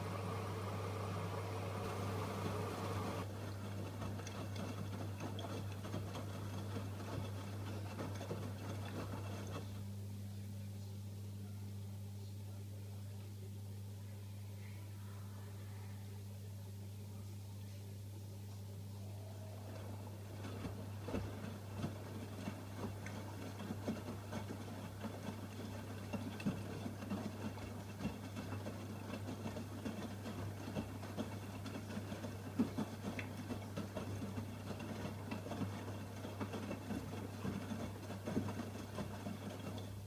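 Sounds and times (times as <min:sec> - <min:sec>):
laundry tumbling in washing machine: 0:00.0 - 0:09.8, 0:19.4 - 0:40.0
low hum: 0:14.0 - 0:22.2.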